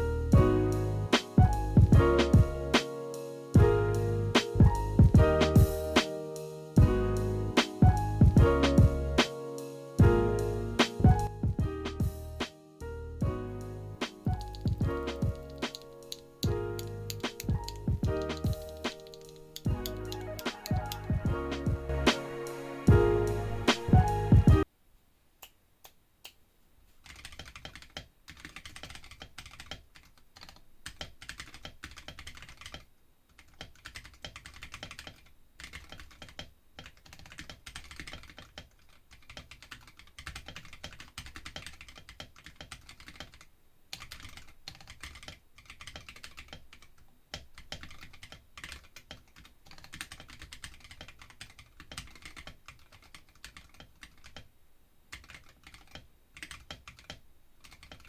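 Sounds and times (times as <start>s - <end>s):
mechanical keyboard typing: 14.0s - 21.7s, 27.0s - 54.5s, 55.1s - 58.0s.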